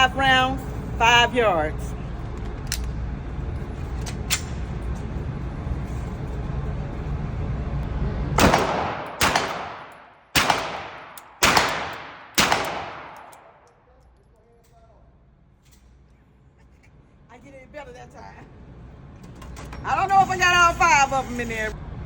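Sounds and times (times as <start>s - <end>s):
pistol shots: 8.4s - 13.7s.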